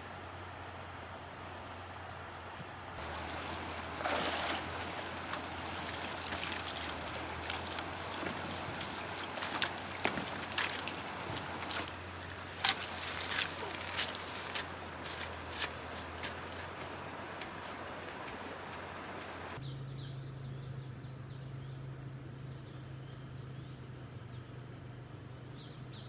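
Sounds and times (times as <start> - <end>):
water sloshing and trickling: 2.8 - 19.6
sharp splashes and knocks: 3.0 - 19.6.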